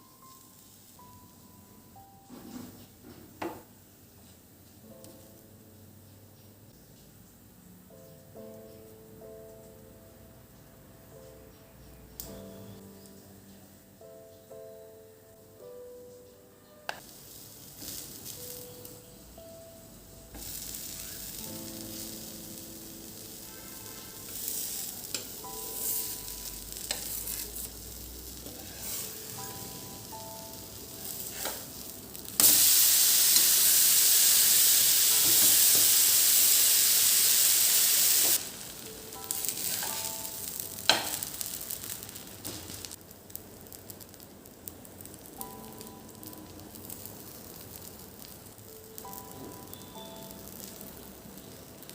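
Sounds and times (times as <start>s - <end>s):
soft background music: 0.0s - 51.9s
food sizzling in hot oil: 17.0s - 19.4s, 20.2s - 51.9s.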